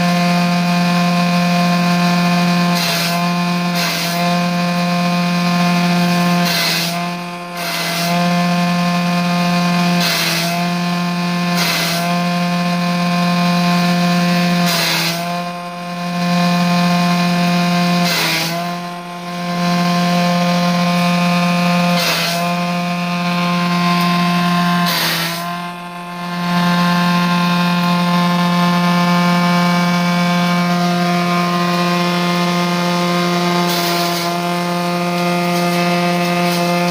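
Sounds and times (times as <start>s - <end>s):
electric grass chopper running: 0.0s - 36.9s
blades chopping material: 10.0s - 10.6s, 11.6s - 12.1s, 14.6s - 15.4s, 17.9s - 18.8s, 21.8s - 22.6s, 23.6s - 25.6s, 30.7s - 36.9s.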